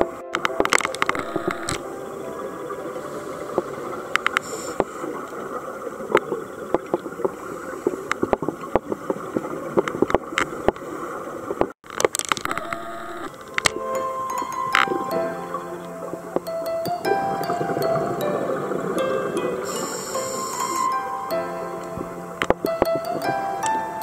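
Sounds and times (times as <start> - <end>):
muffled underwater rush: 0.0 - 11.7
sharp underwater clicks: 0.3 - 1.9, 3.4 - 10.9, 11.5 - 13.8, 21.8 - 24.0.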